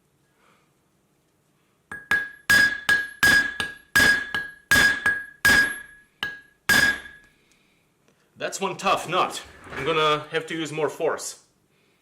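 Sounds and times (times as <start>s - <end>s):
hammer clanging on metal nut: 1.9s - 7.2s.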